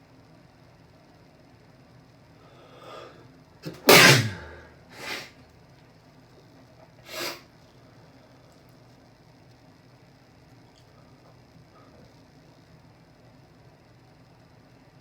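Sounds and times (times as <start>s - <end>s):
person sneezing: 3.6s - 5.3s, 7.0s - 7.4s
quiet breaths: 10.8s - 12.3s.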